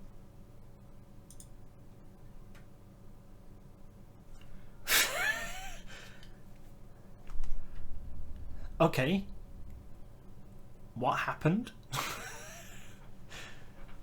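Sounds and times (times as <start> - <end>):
faint clicks: 1.3 - 1.6.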